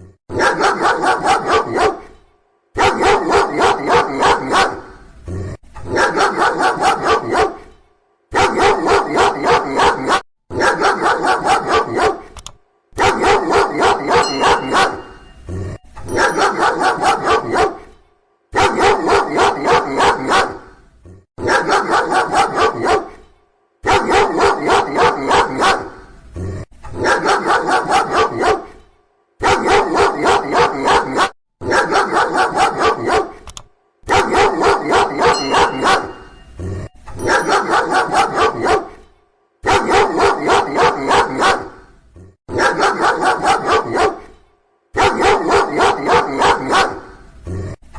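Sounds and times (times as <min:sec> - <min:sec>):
dog barking loudly: 0:00.3 - 0:02.2, 0:02.8 - 0:05.0, 0:05.9 - 0:07.7, 0:08.3 - 0:12.4, 0:13.0 - 0:15.4, 0:16.1 - 0:17.9, 0:18.5 - 0:20.8, 0:21.4 - 0:23.2, 0:23.8 - 0:26.1, 0:27.0 - 0:28.8, 0:29.4 - 0:33.4, 0:34.0 - 0:36.5, 0:37.2 - 0:39.0, 0:39.6 - 0:41.9, 0:42.5 - 0:44.4, 0:45.0 - 0:47.2.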